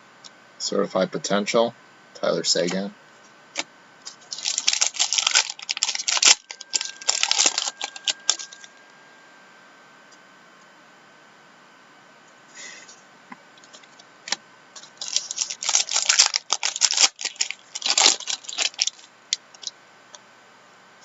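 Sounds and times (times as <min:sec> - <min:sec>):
cards and wrapping crinkling: 0:04.1 - 0:08.8, 0:14.8 - 0:19.7.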